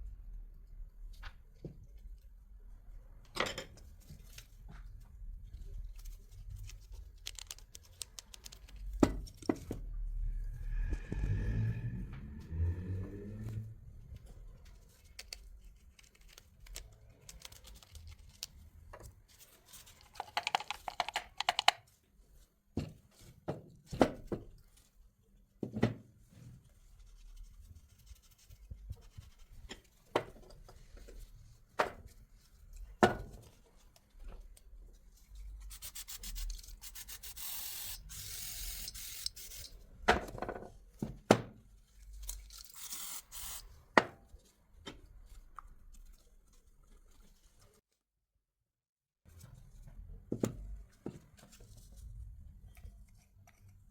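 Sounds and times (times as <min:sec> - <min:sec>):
knocks and clicks of tools: 0:20.2 - 0:21.8
rubbing and scraping on metal parts: 0:26.3 - 0:39.9.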